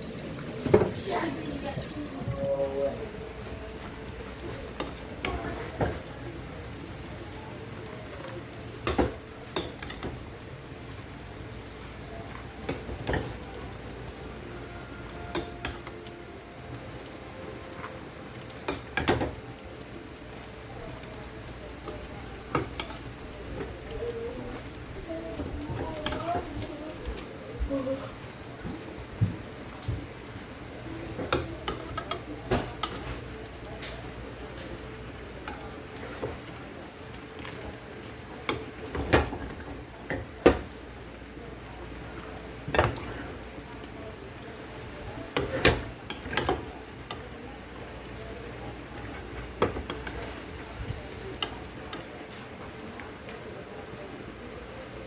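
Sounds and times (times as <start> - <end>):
utensils clinking on cookware: 2.5 - 6.8, 8.0 - 26.7, 30.7 - 40.8, 42.5 - 52.7.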